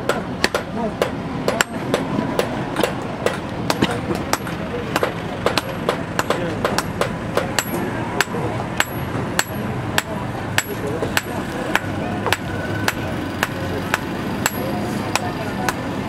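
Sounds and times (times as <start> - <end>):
hammer striking steel on anvil: 0.0 - 15.8.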